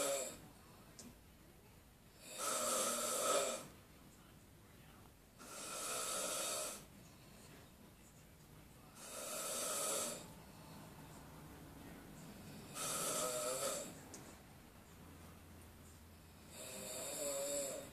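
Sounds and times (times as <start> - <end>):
person snoring loudly: 0.0 - 0.4, 2.2 - 3.7, 5.4 - 6.8, 9.0 - 10.2, 12.7 - 14.0, 16.4 - 17.9.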